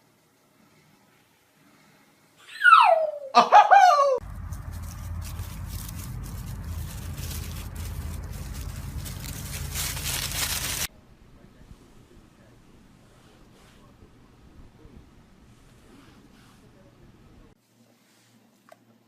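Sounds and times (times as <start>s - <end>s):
dog howling: 2.5s - 4.2s.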